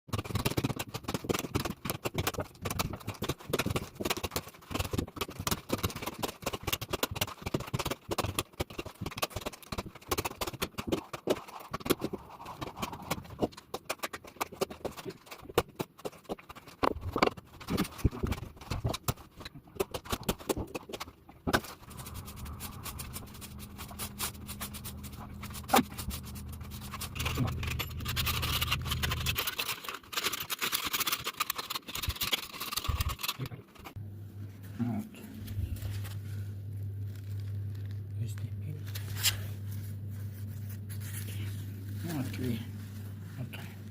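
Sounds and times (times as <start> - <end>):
low steady hum: 16.6 - 30.9, 31.5 - 43.9.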